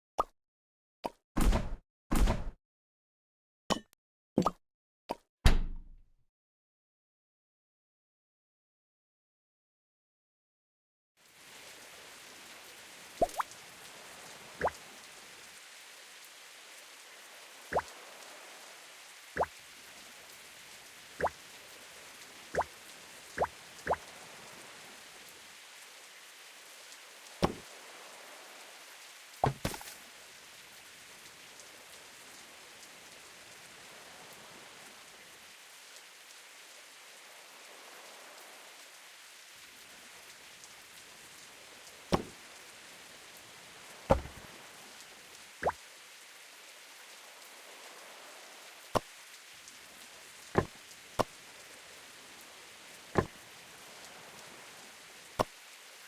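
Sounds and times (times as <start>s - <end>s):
rain hiss: 11.2s - 56.0s.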